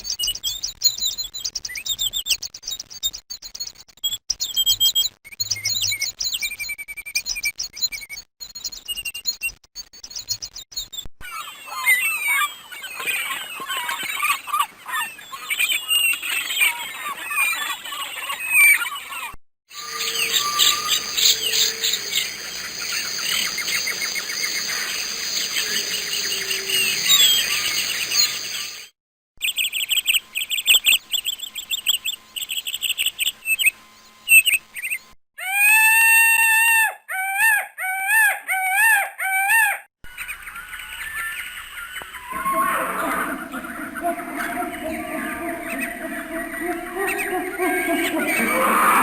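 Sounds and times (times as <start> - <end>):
small birds chirping: 9.8 - 35.1, 40.1 - 49.0
long clear bird call: 19.7 - 28.9, 40.2 - 49.0.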